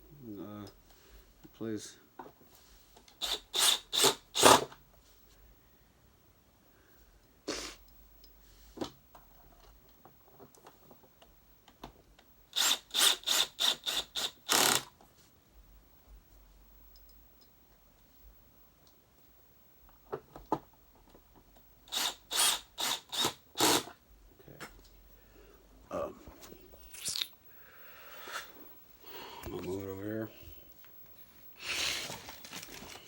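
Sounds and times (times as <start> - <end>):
power screwdriver driving screws: 3.2 - 4.7, 12.6 - 14.9, 21.9 - 23.9.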